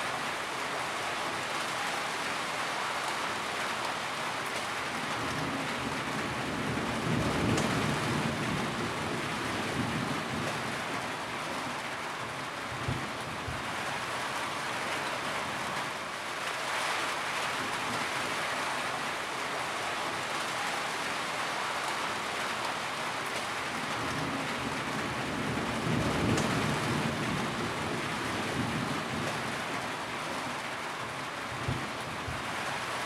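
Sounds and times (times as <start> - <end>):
steady rain falling: 0.0 - 33.0
thunder rumbling: 6.3 - 10.8, 24.0 - 29.8.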